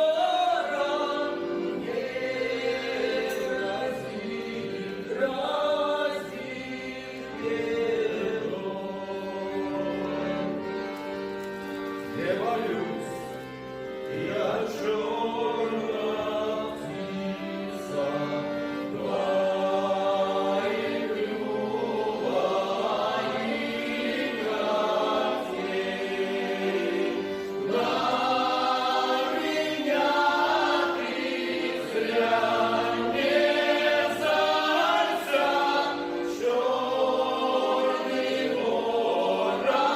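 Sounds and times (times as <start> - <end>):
folk vocal ensemble singing: 0.0 - 39.9.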